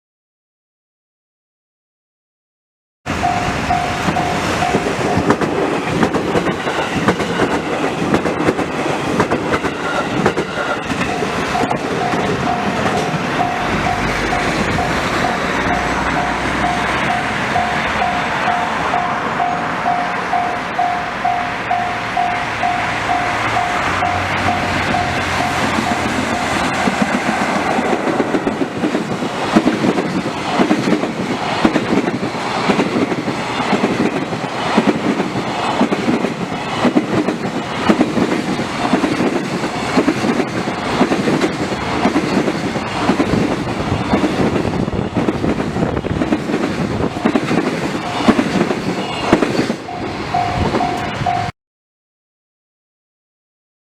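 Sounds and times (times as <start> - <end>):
level crossing bell ringing: 3.2 - 5.2, 11.0 - 27.1, 49.8 - 51.5
train wheels clattering on rails: 3.2 - 51.5.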